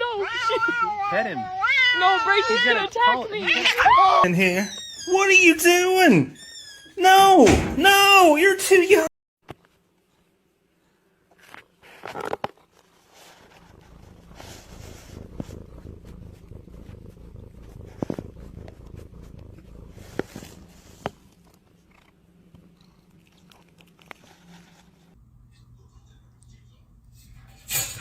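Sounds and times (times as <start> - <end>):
cat purring: 13.0 - 25.1.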